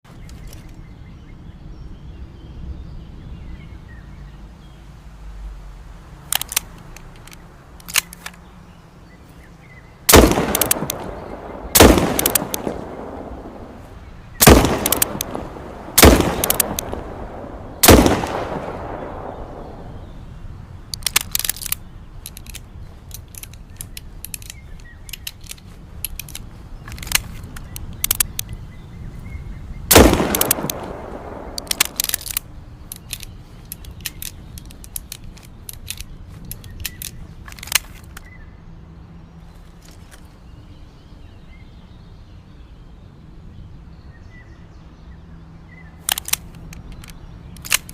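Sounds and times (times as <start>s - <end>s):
small clicks and knocks: 0.1s - 0.8s, 6.2s - 8.5s, 14.8s - 15.5s, 16.4s - 17.0s, 20.9s - 28.6s, 30.3s - 38.4s, 46.0s - 47.9s
revolver shots echoing: 10.1s - 13.8s, 14.4s - 20.1s, 29.9s - 32.0s.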